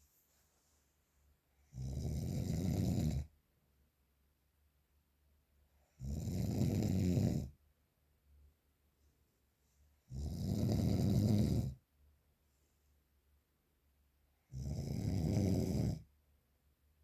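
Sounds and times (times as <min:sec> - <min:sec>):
person snoring heavily: 0:01.7 - 0:03.2, 0:14.6 - 0:16.0.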